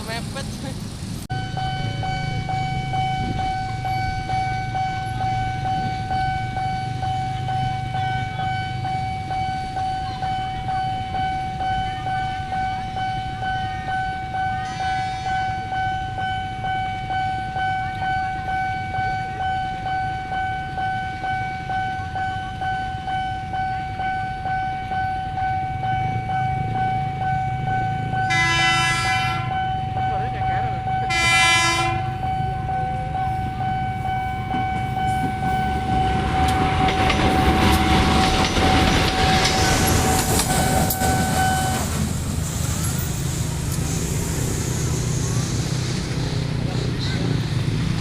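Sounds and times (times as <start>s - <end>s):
low rumble of traffic: 0.0s - 48.0s
level crossing warning alarm: 1.3s - 45.0s
short horn: 28.3s - 29.5s, 31.1s - 32.1s.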